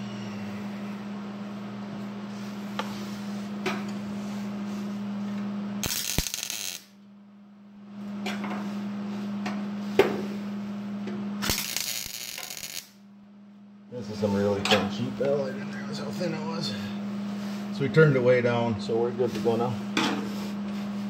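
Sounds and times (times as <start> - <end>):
electrical hum: 0.0 - 21.0
arc welding crackling hiss: 5.8 - 6.9, 11.4 - 13.0.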